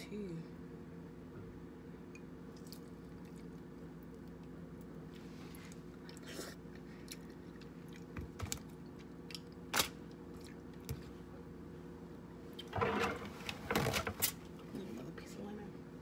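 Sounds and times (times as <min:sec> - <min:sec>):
steady low hum: 0:00.0 - 0:16.0
chewing: 0:02.5 - 0:11.2.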